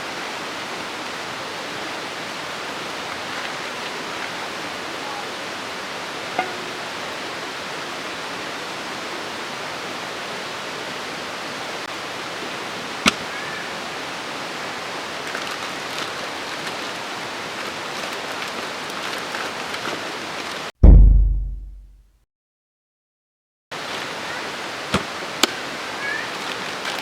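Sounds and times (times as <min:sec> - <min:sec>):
small crackles: 0:15.2 - 0:17.0, 0:26.3 - 0:27.0
sharp click: 0:20.8 - 0:21.8
loud deep boom: 0:20.8 - 0:21.9.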